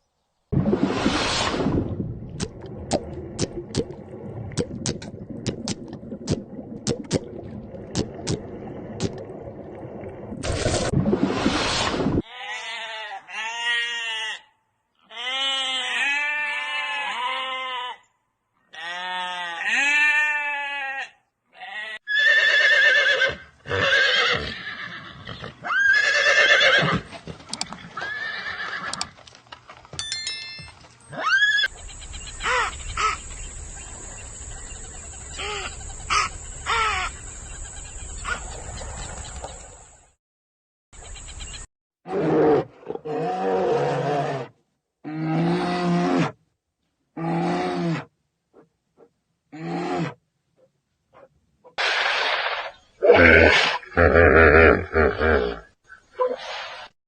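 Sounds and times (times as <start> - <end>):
horse neighing: 22.0 - 27.1.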